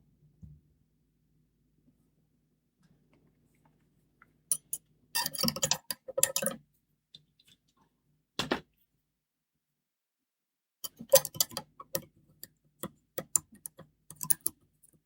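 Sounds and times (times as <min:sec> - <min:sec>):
padlock and picks clicking: 0:10.9 - 0:12.1, 0:13.2 - 0:14.6.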